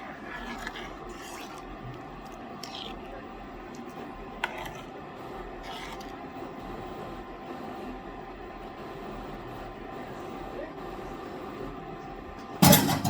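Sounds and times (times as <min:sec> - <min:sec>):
steady background hum: 0:00.0 - 0:13.0
kitchen utensils scraping: 0:12.6 - 0:13.0.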